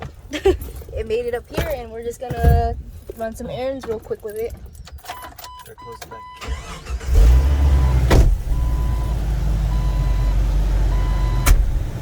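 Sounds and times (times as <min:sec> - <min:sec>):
dashboard warning chime beeping: 0:05.1 - 0:11.6
car engine starting and running: 0:06.2 - 0:12.0.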